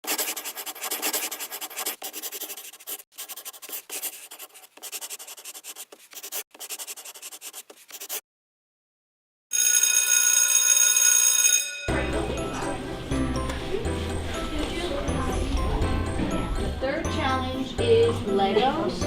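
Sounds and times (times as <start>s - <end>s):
scratching and rubbing: 0.0s - 8.2s.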